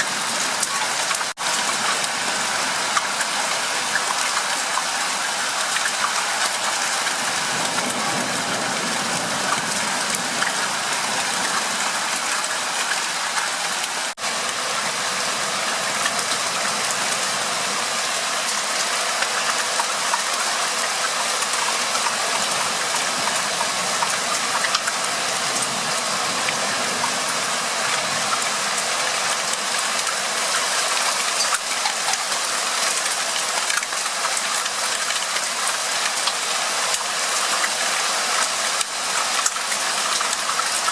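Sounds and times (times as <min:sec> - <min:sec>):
steady rain hiss: 0:00.0 - 0:40.9
faint raindrop ticks: 0:02.9 - 0:08.2, 0:18.4 - 0:26.0, 0:27.9 - 0:40.9.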